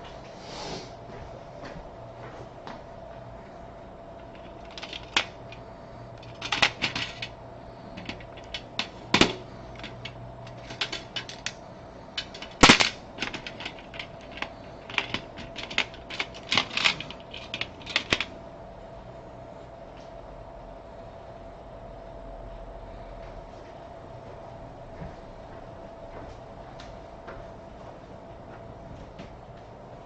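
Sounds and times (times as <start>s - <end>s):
faint steady hum: 0.0s - 30.0s
keyboard typing: 4.2s - 5.6s, 6.2s - 11.6s, 12.2s - 18.3s.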